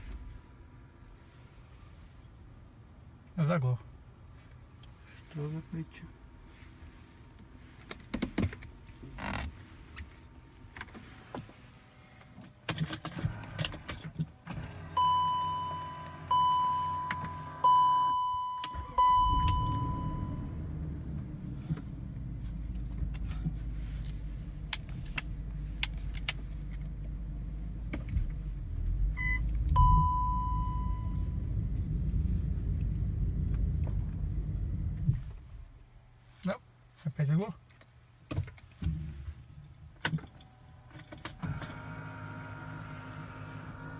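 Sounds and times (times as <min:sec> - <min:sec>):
car warning chimes: 0:14.8 - 0:20.7, 0:29.2 - 0:31.5
car engine idling: 0:14.8 - 0:35.8.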